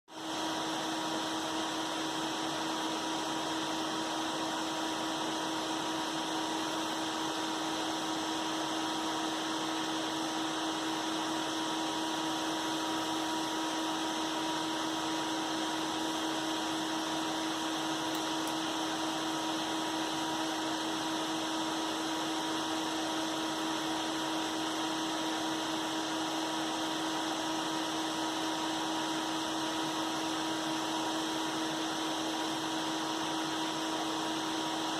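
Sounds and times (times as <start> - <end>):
computer fans whooshing and humming: 0.2 - 34.9.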